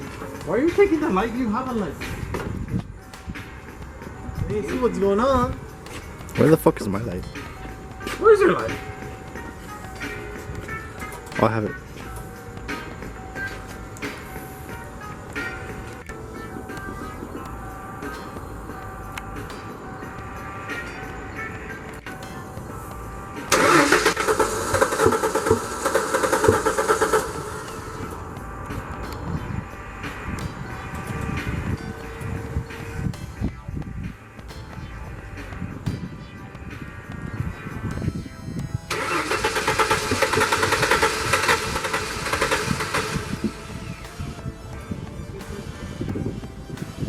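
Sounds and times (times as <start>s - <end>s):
starter motor cranking: 23.5s - 28.2s, 38.9s - 43.8s.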